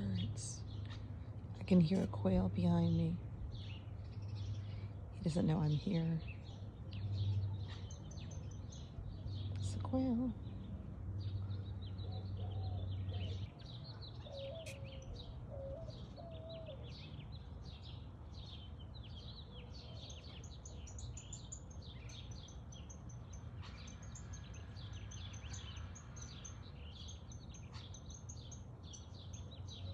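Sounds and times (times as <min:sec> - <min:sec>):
small birds chirping: 0:00.0 - 0:29.9
lower wavering bird calls: 0:11.3 - 0:18.0.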